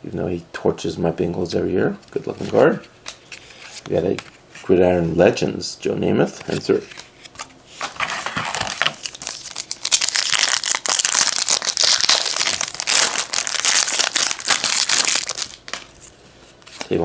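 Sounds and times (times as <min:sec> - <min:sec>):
foil wrapper tearing and crinkling: 0:08.3 - 0:15.9.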